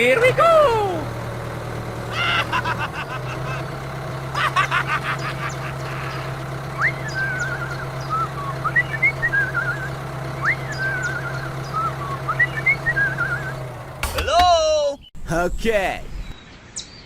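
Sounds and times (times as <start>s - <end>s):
tractor engine hum: 0.0s - 16.3s
whistled bird-like call: 6.8s - 13.6s.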